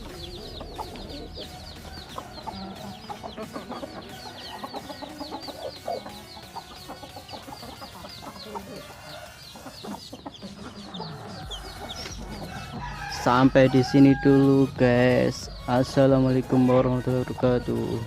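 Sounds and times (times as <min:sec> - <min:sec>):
chickens clucking softly: 0:00.0 - 0:15.8.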